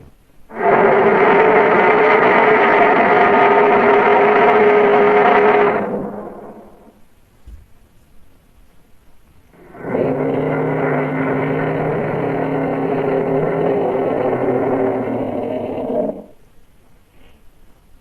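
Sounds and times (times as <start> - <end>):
dinosaur roar: 0.5 - 7.0, 9.6 - 16.4.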